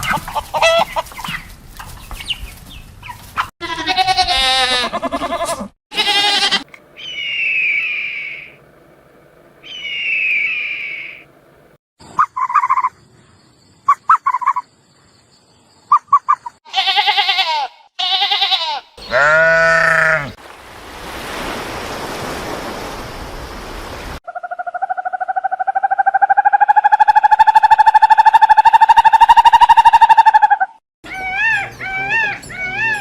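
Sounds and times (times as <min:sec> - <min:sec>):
wavering bleat-like cries: 0:03.6 - 0:06.7, 0:16.7 - 0:20.4
fast-pulsing animal call: 0:04.9 - 0:08.6, 0:09.6 - 0:11.2, 0:24.3 - 0:33.0.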